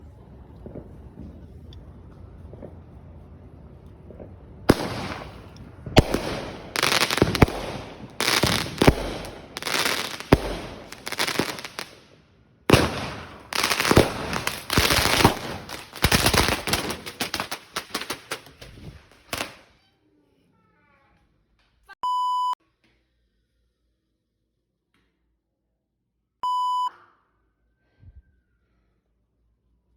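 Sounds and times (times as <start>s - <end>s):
fireworks bangs and crackle: 0.0s - 19.7s.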